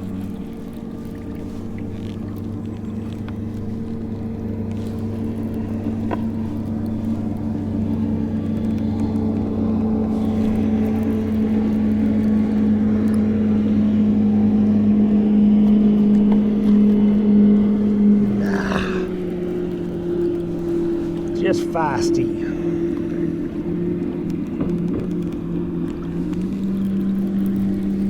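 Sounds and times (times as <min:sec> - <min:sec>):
motorboat engine droning: 0:00.0 - 0:28.0.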